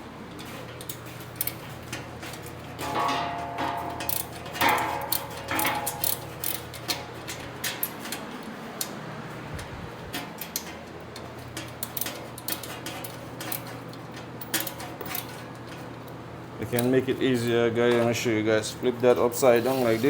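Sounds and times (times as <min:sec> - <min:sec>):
hand tool clicking on bolts: 0:03.9 - 0:08.2.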